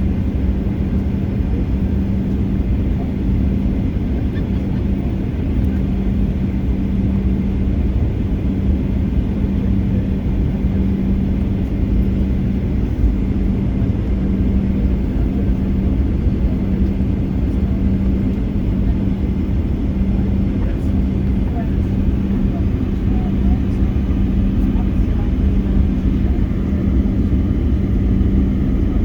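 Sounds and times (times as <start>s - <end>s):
airplane engines rumbling in flight: 0.0s - 29.0s.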